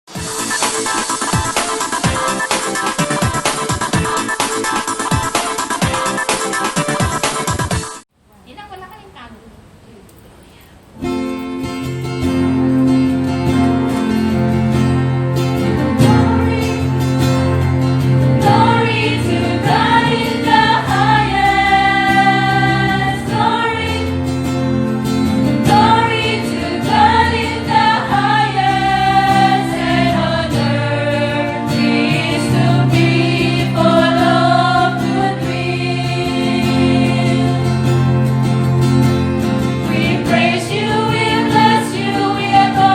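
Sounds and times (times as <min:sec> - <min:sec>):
choir singing in parts: 0:15.6 - 0:38.8, 0:39.4 - 0:42.9.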